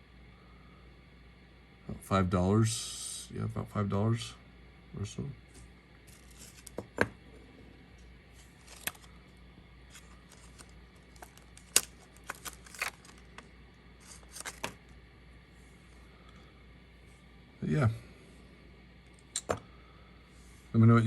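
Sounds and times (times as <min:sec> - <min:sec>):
small items clicking and rustling: 0:06.1 - 0:06.9, 0:08.6 - 0:09.1, 0:09.9 - 0:14.8.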